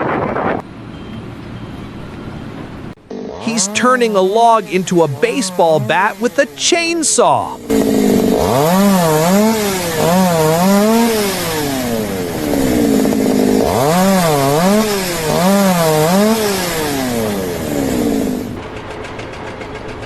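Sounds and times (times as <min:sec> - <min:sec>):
chainsaw revving: 0:03.0 - 0:18.6
rapid ticking: 0:03.1 - 0:18.3.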